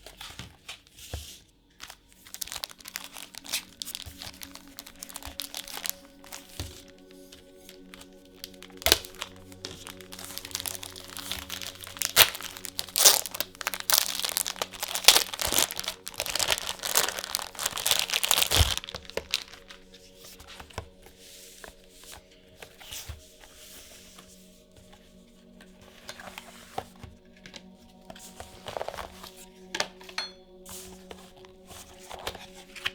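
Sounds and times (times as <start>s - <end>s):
plastic packaging crinkling and tearing: 1.8s - 23.3s, 25.6s - 30.2s, 30.8s - 32.9s.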